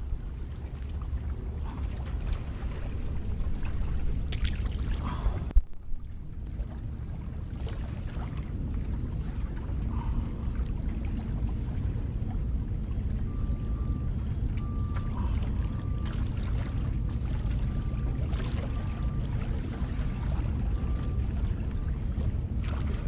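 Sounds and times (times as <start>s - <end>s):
wind rumbling on microphone: 0.0s - 14.4s.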